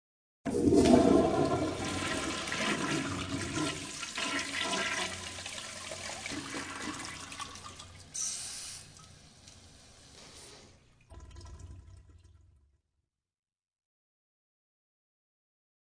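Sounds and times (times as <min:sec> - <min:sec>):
water gurgling down drain: 0:00.5 - 0:08.0, 0:11.0 - 0:12.7
toilet flushing: 0:00.5 - 0:12.6
water hissing: 0:08.1 - 0:09.0, 0:09.8 - 0:10.8.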